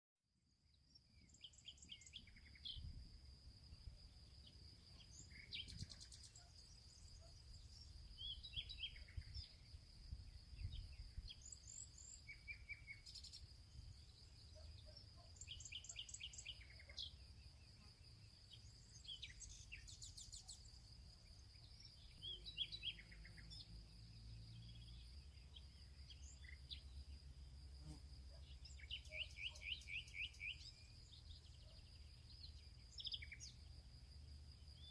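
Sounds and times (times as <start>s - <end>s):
songbirds chirping: 0.5s - 34.9s
high insect buzz: 26.2s - 29.0s.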